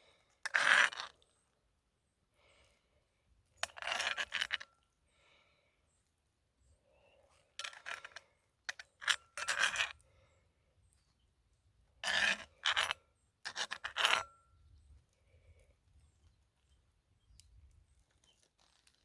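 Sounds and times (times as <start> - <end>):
spoon scraping cast-iron pot: 0.5 - 1.1, 3.6 - 4.6, 7.6 - 10.0, 12.0 - 14.4.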